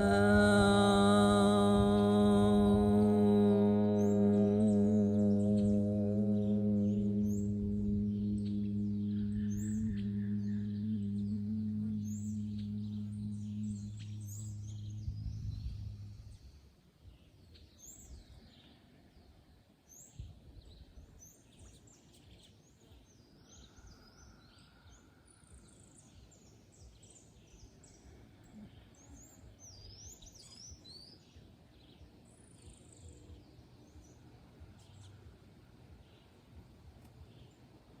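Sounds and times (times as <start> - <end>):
birds chirping: 0.0 - 16.7.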